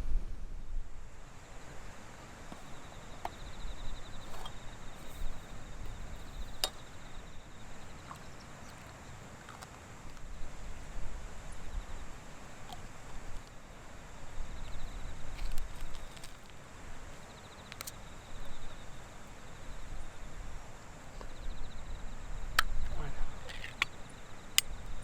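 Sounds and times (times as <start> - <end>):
insect trilling: 2.6 - 10.5, 21.2 - 25.0.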